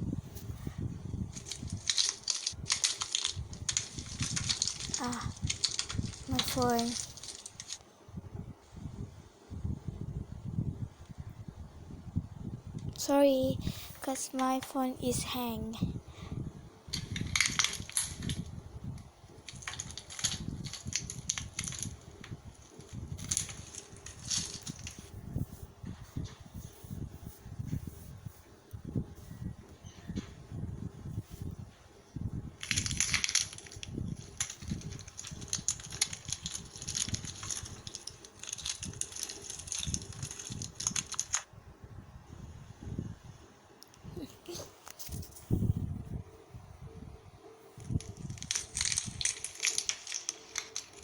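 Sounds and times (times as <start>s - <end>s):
sharp crackling and crunching: 0.3s - 7.9s, 16.9s - 26.3s, 32.5s - 41.5s, 47.6s - 51.0s.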